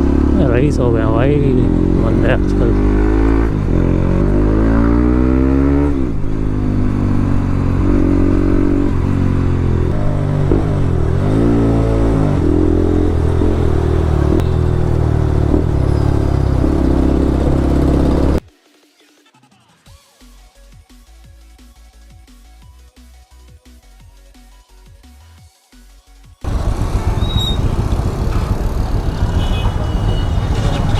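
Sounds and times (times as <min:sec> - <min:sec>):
motorcycle engine revving: 0:00.0 - 0:18.4, 0:26.4 - 0:30.9.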